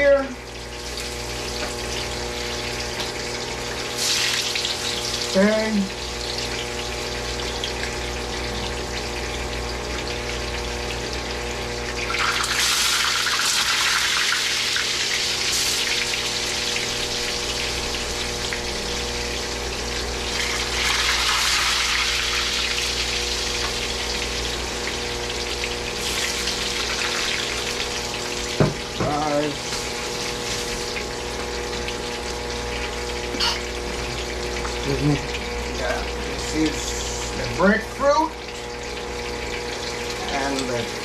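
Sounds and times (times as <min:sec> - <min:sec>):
food sizzling in hot oil: 0:00.0 - 0:41.0
steady low hum: 0:14.5 - 0:41.0.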